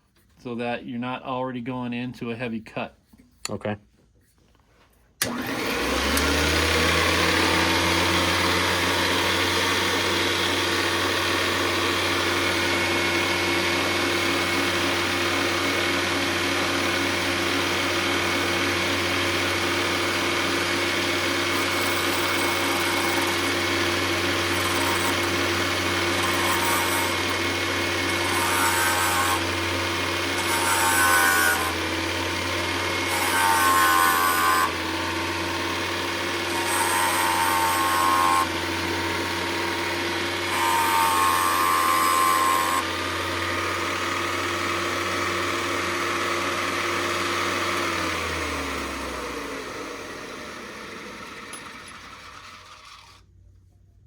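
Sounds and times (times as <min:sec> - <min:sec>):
grinding stone on metal valve: 0:21.4 - 0:29.5, 0:30.4 - 0:31.8, 0:36.4 - 0:38.5, 0:40.5 - 0:42.9.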